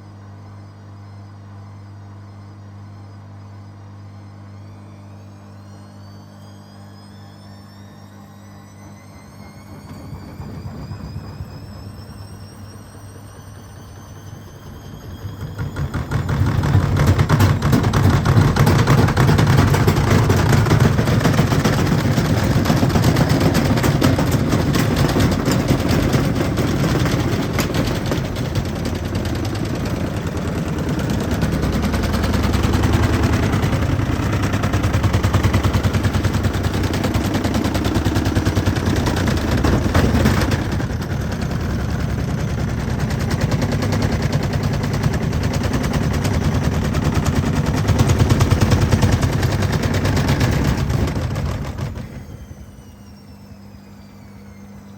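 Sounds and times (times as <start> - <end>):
washing machine drum rattling and knocking: 15.5 - 52.1.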